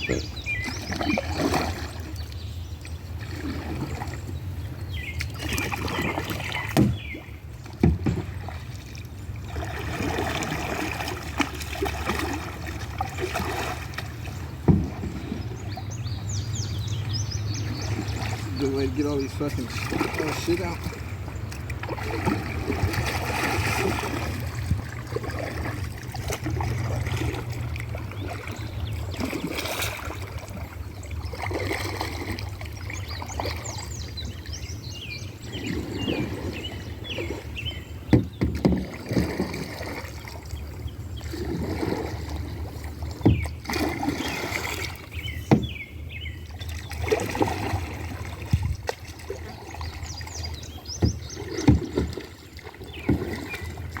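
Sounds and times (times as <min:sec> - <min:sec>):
water sloshing and splashing: 0:00.0 - 0:54.0
knocks against boat: 0:06.7 - 0:08.4, 0:14.0 - 0:15.5, 0:21.8 - 0:26.5, 0:38.1 - 0:39.6, 0:43.2 - 0:44.3, 0:45.4 - 0:45.8, 0:48.4 - 0:49.0, 0:50.9 - 0:52.3, 0:53.0 - 0:53.8.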